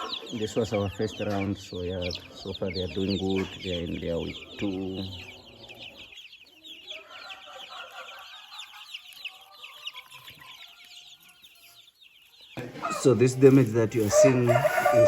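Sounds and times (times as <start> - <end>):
chicks peeping: 0.0 - 15.0
lower chicken calls: 12.6 - 15.0.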